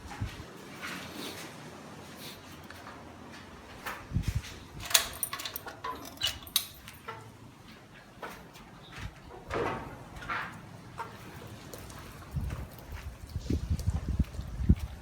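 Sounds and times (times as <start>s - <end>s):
door and keys clicking: 4.8s - 7.3s.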